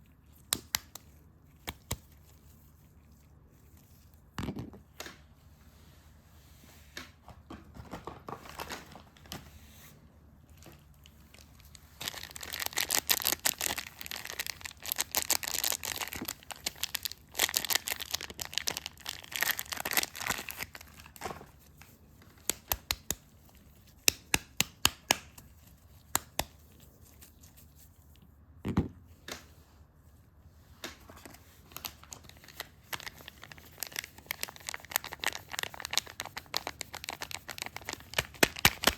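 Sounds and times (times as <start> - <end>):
soap wrapping crinkling and tearing: 0.2 - 4.4, 10.5 - 28.2, 31.2 - 38.9.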